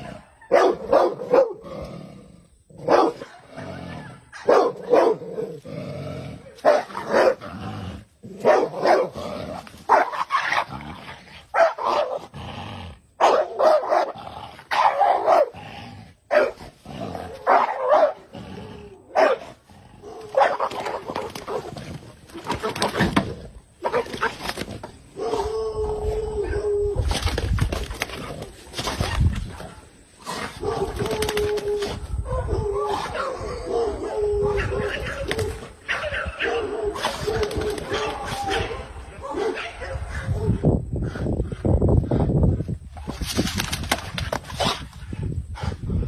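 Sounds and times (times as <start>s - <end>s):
dog barking: 0.4s - 1.6s, 2.8s - 3.4s, 4.4s - 5.3s, 6.6s - 7.4s, 8.4s - 9.2s, 9.9s - 10.2s, 11.5s - 12.2s, 13.2s - 15.6s, 16.3s - 16.6s, 17.4s - 18.2s, 19.1s - 19.5s, 20.3s - 21.6s, 35.9s - 40.6s.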